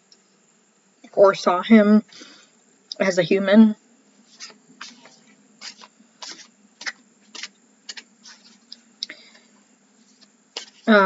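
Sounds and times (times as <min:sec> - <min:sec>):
cards clicking and tapping: 0:04.4 - 0:08.6.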